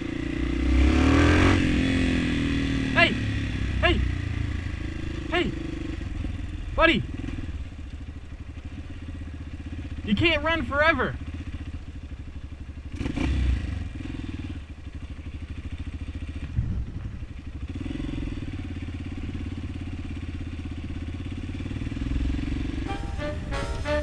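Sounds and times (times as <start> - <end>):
motorcycle engine running: 1.4 - 10.1, 11.2 - 13.0
swing music: 22.9 - 24.0.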